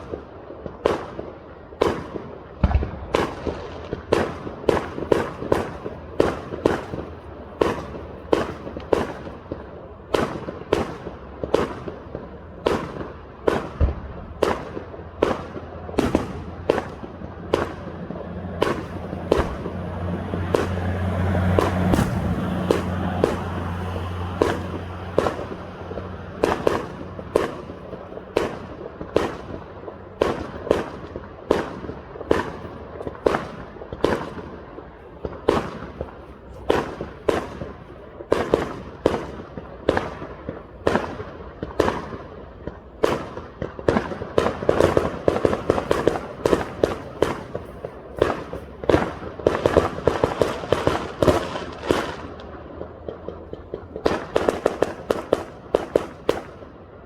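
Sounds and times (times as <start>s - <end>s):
fireworks banging: 0.0s - 57.0s.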